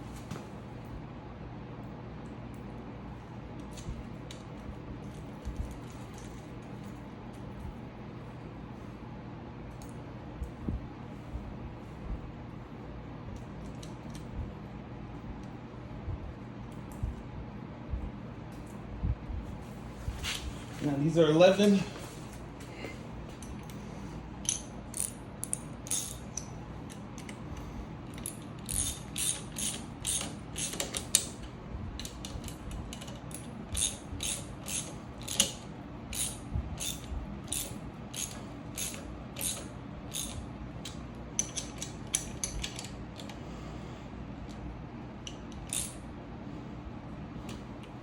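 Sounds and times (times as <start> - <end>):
ratchet wrench clicking: 24.4 - 27.3, 28.1 - 31.4, 32.0 - 40.4, 45.3 - 46.0.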